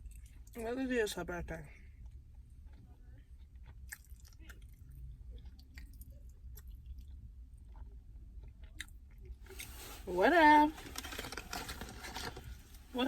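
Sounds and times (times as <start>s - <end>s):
faint chewing: 0.0s - 0.6s, 1.8s - 9.9s.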